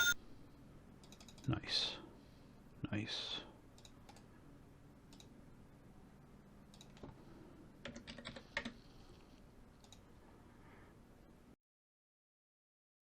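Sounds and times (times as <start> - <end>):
keyboard clicks: 7.8 - 8.8.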